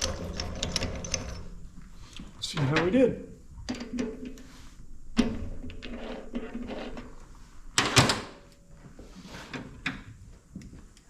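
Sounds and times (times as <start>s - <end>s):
loud metallic clatter: 0.0s - 2.1s.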